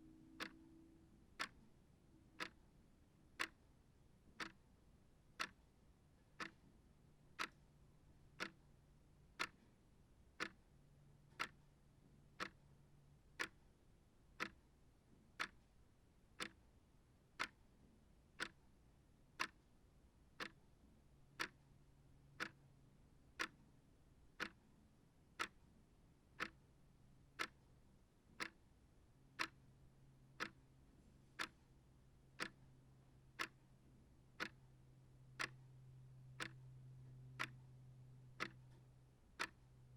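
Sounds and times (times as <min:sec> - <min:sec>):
shelf clock ticking: 0:01.4 - 0:01.6, 0:02.4 - 0:02.7, 0:03.4 - 0:03.6, 0:04.4 - 0:04.6, 0:05.4 - 0:05.6, 0:06.4 - 0:06.7, 0:07.3 - 0:07.6, 0:08.4 - 0:08.7, 0:09.4 - 0:09.6, 0:10.4 - 0:10.6, 0:11.3 - 0:11.7, 0:12.4 - 0:12.6, 0:13.4 - 0:13.6, 0:14.4 - 0:14.6, 0:15.4 - 0:15.7, 0:16.4 - 0:16.6, 0:17.4 - 0:17.7, 0:18.4 - 0:18.6, 0:19.4 - 0:19.6, 0:20.4 - 0:20.6, 0:21.4 - 0:21.6, 0:22.4 - 0:22.6, 0:23.4 - 0:23.6, 0:24.4 - 0:24.6, 0:25.4 - 0:25.6, 0:26.4 - 0:26.6, 0:27.4 - 0:27.7, 0:28.3 - 0:28.7, 0:29.4 - 0:29.6, 0:30.4 - 0:30.6, 0:31.4 - 0:31.6, 0:32.4 - 0:32.7, 0:33.4 - 0:33.6, 0:34.4 - 0:34.7, 0:35.4 - 0:35.7, 0:36.4 - 0:37.7, 0:38.4 - 0:39.8.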